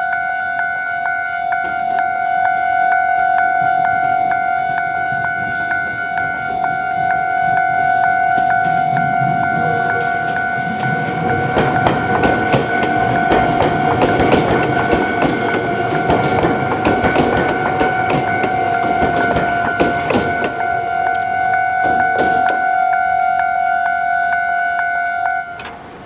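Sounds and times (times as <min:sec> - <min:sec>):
level crossing alarm ringing: 0:00.0 - 0:26.0
train wheels clattering on rail joints: 0:04.4 - 0:24.0.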